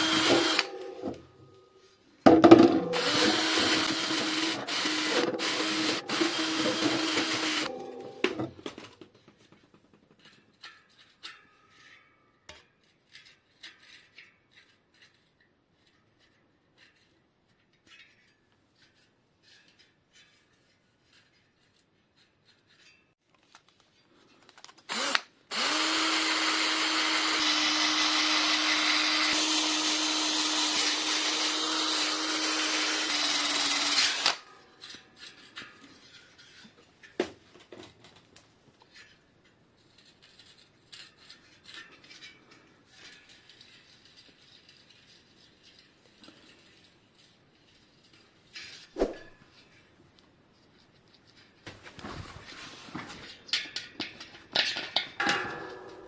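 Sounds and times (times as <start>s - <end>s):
electric power tool running: 0.0s - 1.1s, 2.9s - 7.8s, 24.9s - 34.4s.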